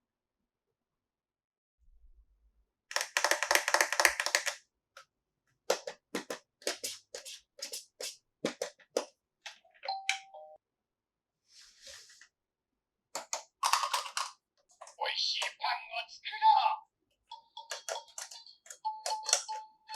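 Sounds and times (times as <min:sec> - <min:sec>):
plastic toys rattling and clicking: 0:02.9 - 0:04.6, 0:13.2 - 0:15.5, 0:17.3 - 0:19.9.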